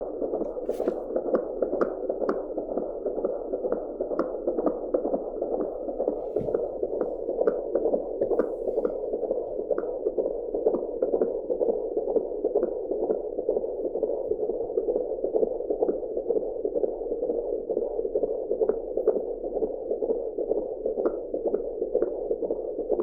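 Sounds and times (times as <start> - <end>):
fast whooshing heartbeat: 0.1 - 22.6.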